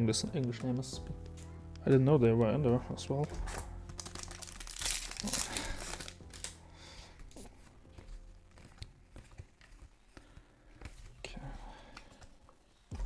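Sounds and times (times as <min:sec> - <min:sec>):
foil wrapper tearing and crinkling: 0:03.3 - 0:06.6.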